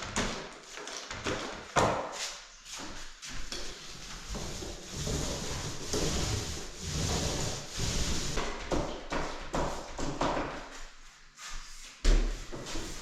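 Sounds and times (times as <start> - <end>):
hand tool scraping a surface: 3.6 - 8.6.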